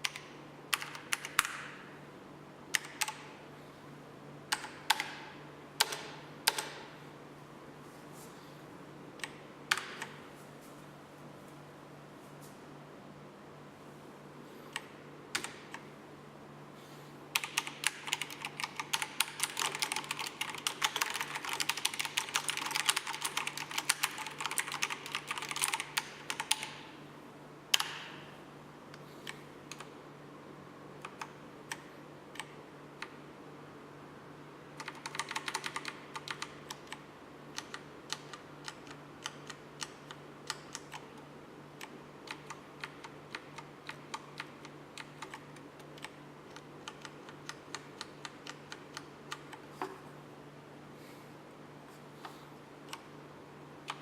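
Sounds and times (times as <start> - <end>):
mechanical keyboard typing: 0.0 - 1.7, 2.7 - 3.3, 4.5 - 5.2, 5.8 - 6.9, 14.7 - 15.8, 17.3 - 26.8, 34.8 - 41.2, 41.8 - 49.6.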